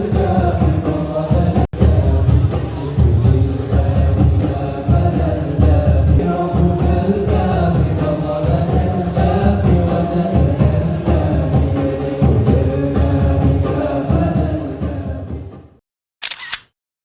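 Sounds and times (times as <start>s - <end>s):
strong steady bass: 0.0s - 11.7s
person singing: 0.0s - 15.6s.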